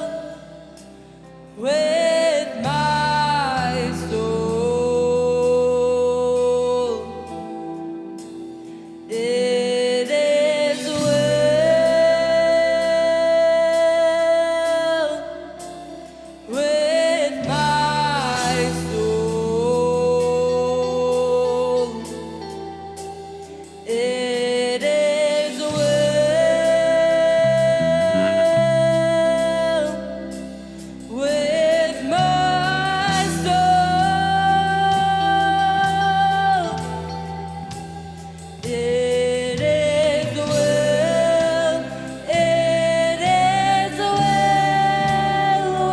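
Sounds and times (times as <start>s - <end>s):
slow worship singing: 0.0s - 45.9s
sustained bass: 0.0s - 45.9s.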